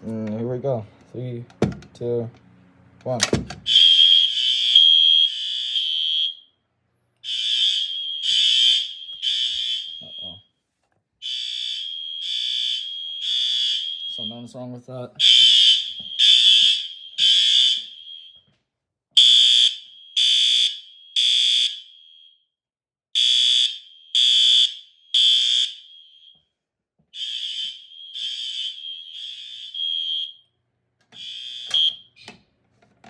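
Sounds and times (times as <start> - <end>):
fire alarm horn pulses: 3.7 - 6.5, 7.2 - 10.4, 11.2 - 14.6, 15.2 - 18.4, 19.2 - 22.3, 23.2 - 26.4, 27.2 - 30.5, 31.2 - 32.2.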